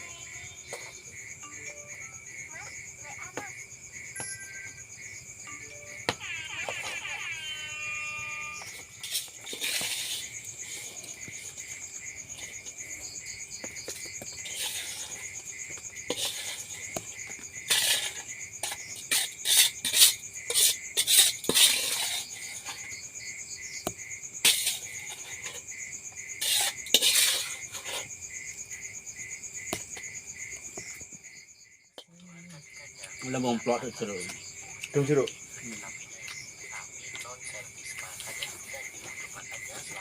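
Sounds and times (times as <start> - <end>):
crickets chirring: 0.0 - 40.0
cutlery and cookware clinking: 8.7 - 10.8, 16.1 - 16.8, 17.7 - 22.8, 24.4 - 25.6, 26.4 - 28.1.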